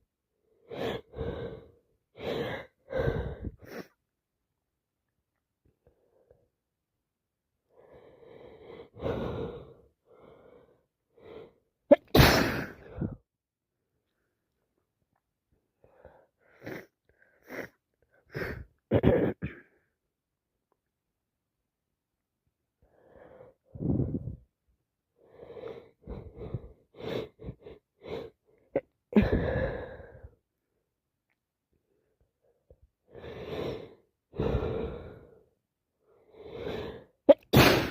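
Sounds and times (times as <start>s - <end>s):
woman gasping breaths: 0.7s - 4.0s, 29.1s - 30.4s
woman sneezing loudly: 11.9s - 12.8s, 37.3s - 37.9s.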